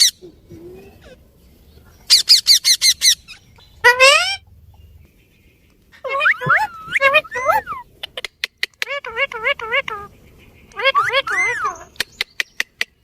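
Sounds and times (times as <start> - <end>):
parrot chirping: 2.1 - 4.4, 6.0 - 10.1, 10.7 - 13.0
parrot harsh squawk: 2.1 - 4.4, 6.0 - 7.8, 10.8 - 12.0.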